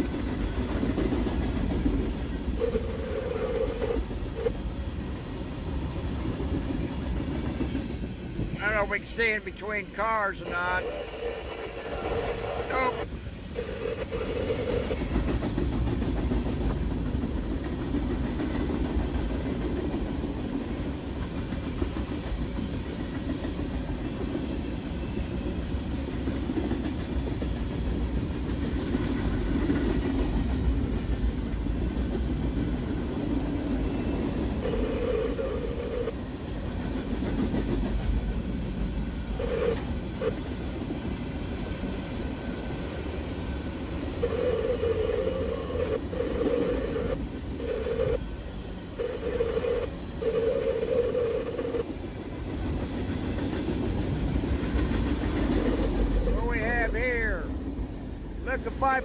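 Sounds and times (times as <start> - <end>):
freight train wheels rumbling on track: 0.0 - 59.0.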